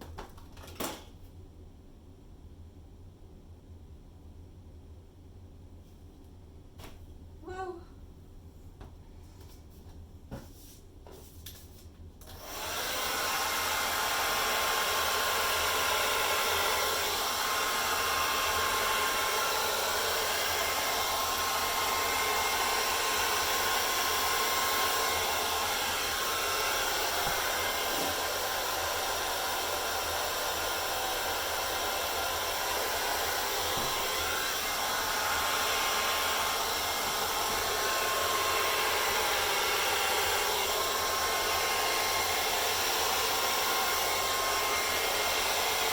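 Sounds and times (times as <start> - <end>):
hair dryer running: 12.2 - 45.9.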